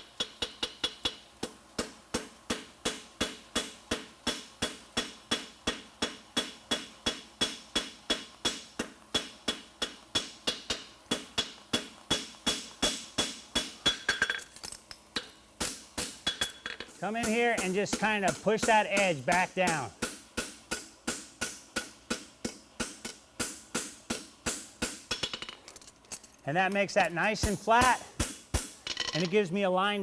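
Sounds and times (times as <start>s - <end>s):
hammer striking horseshoe on anvil: 0.1s - 14.5s, 15.2s - 25.5s, 27.0s - 29.3s.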